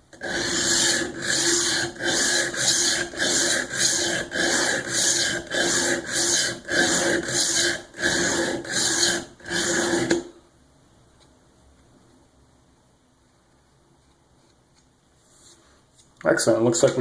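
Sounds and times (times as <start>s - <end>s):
blade scraping on sharpener: 0.2s - 10.3s.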